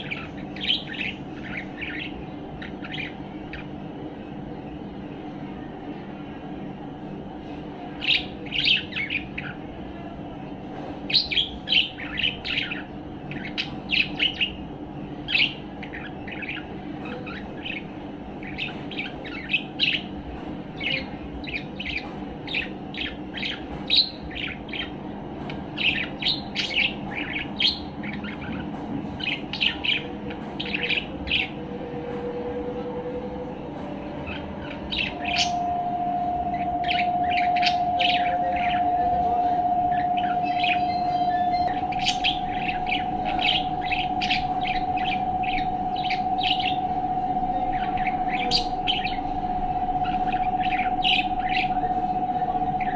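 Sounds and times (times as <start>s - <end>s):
low background hum: 0.0s - 52.9s
budgerigar chirping: 25.8s - 28.6s, 39.9s - 46.8s
steady tone: 31.0s - 52.9s.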